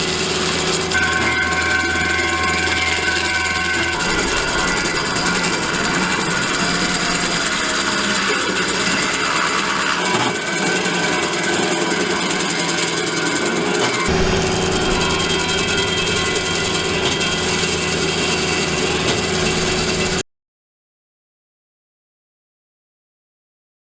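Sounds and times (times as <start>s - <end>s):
loader engine running: 0.0s - 20.2s
stump grinder grinding: 0.0s - 20.2s.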